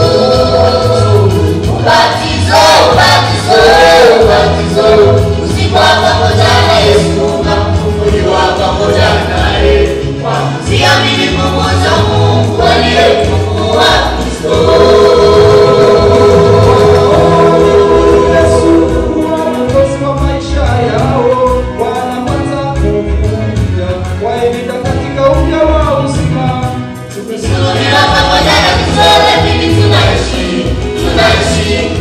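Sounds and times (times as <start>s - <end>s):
choir singing: 0.0s - 20.0s, 27.4s - 32.0s
steady bass line: 0.0s - 32.0s.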